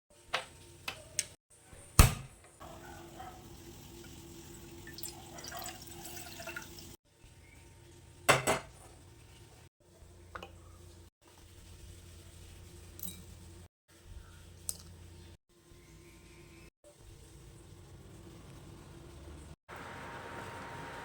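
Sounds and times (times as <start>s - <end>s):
running water: 2.6s - 7.0s.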